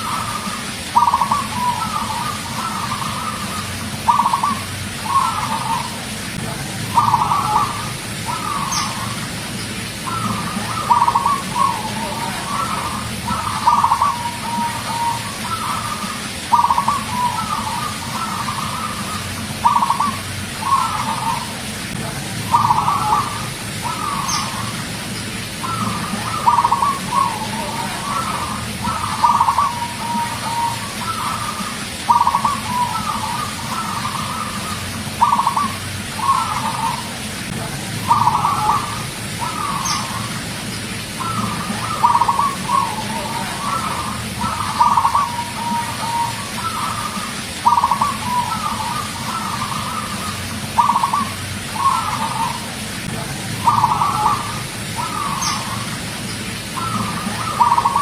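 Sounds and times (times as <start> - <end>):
dove cooing: 0.0 - 9.3, 10.0 - 24.8, 25.5 - 40.4, 41.1 - 58.0
steady low hum: 0.0 - 58.0.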